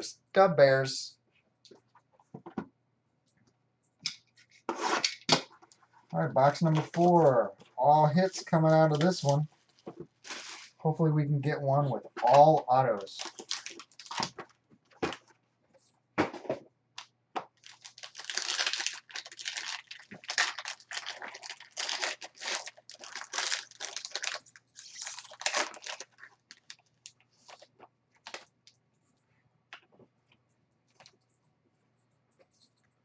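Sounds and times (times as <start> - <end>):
plastic wrapping crinkling and tearing: 8.4 - 10.8, 12.3 - 15.3, 17.6 - 28.5.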